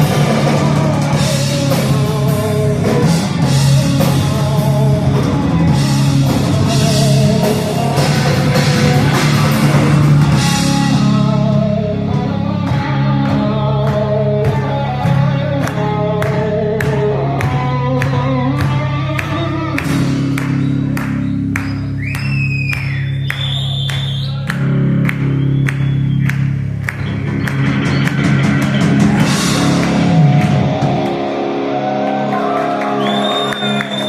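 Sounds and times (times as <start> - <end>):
person singing: 0.0 - 20.4
live rock band playing: 0.0 - 34.0.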